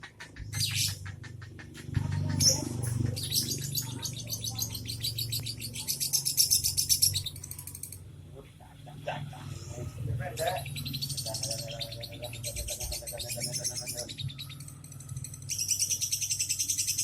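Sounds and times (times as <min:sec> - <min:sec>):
lovebird high chirps: 0:00.4 - 0:01.1, 0:02.2 - 0:08.0, 0:10.4 - 0:17.0.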